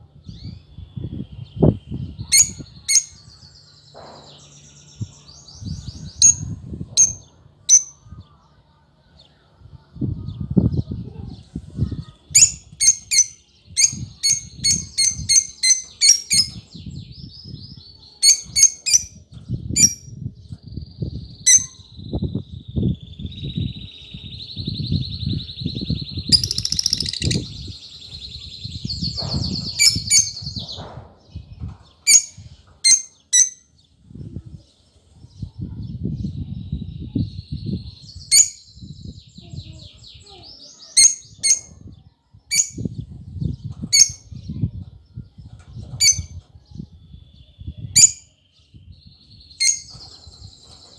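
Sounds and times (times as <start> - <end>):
birds chirping: 0.0 - 50.9
warbling bird trill: 7.0 - 8.0, 26.3 - 27.6.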